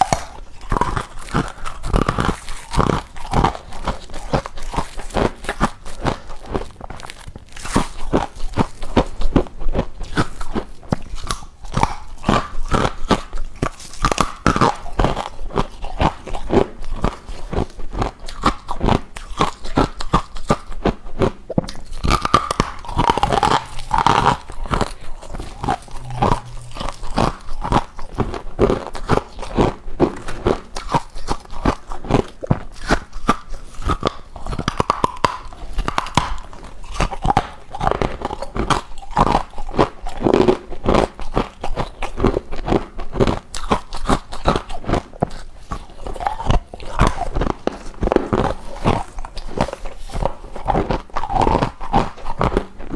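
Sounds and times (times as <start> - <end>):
person crunching ice: 0.0 - 52.9.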